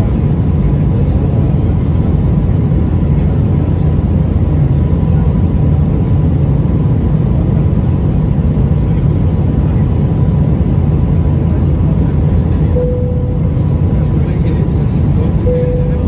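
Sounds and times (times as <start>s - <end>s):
airplane cabin roar: 0.0s - 16.0s
faint steady tone: 12.8s - 14.3s, 15.4s - 16.0s.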